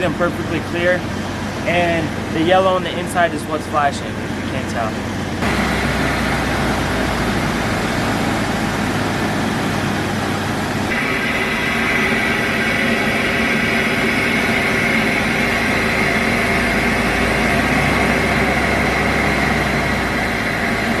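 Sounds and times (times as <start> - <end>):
higher band of noise: 0.0 - 21.0
vehicle rumble and hiss: 0.0 - 21.0.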